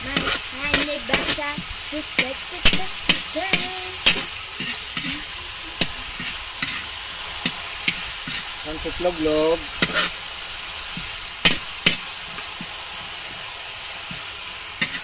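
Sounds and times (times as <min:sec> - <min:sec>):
utensil scraping pan: 0:00.0 - 0:08.6, 0:09.7 - 0:10.2, 0:14.8 - 0:15.0
noodles sizzling in pan: 0:00.0 - 0:15.0.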